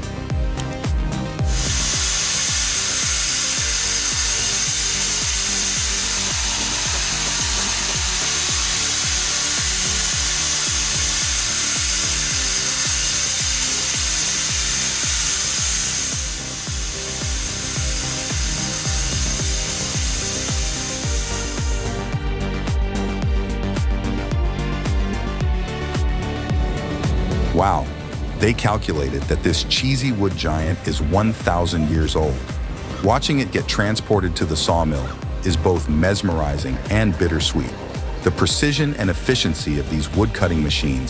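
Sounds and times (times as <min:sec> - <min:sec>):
background music with beat: 0:00.0 - 0:41.0
power saw cutting wood: 0:01.4 - 0:22.6.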